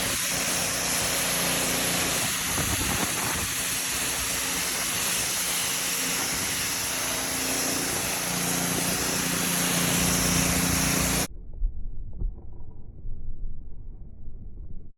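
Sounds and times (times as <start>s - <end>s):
mechanical drone with high hiss: 0.0s - 11.3s
faint low rumble: 11.3s - 14.9s.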